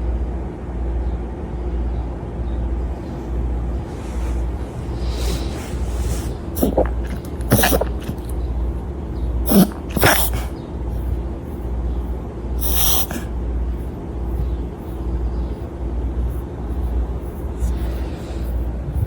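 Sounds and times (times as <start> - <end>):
small dog sneezing: 5.0 - 8.4, 9.4 - 11.2, 12.6 - 13.4.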